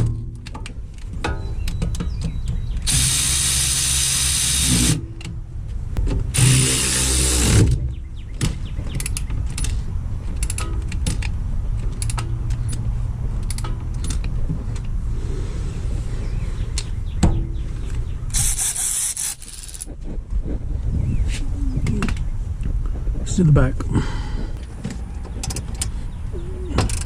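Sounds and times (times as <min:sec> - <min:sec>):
power tool running: 0:02.9 - 0:05.0, 0:06.4 - 0:07.8
tools clicking and clattering: 0:08.4 - 0:14.9.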